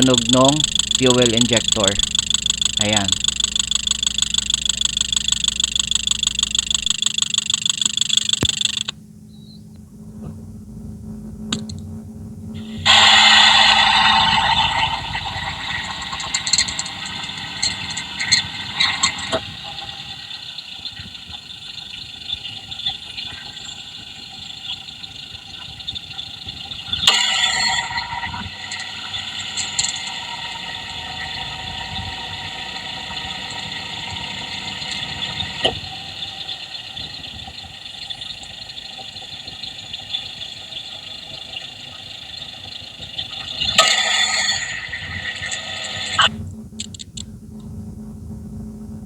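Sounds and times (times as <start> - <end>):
faint light ticks: 0.0 - 9.0
fuel injector ticking: 0.0 - 9.0, 12.6 - 47.3
idling engine hum: 0.0 - 41.7.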